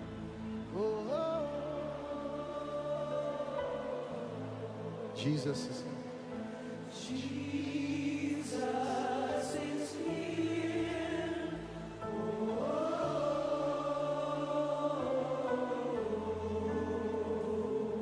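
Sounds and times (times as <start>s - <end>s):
bass: 0.0s - 5.2s
choir and congregation singing: 0.0s - 18.0s
keyboard chords: 0.0s - 18.0s.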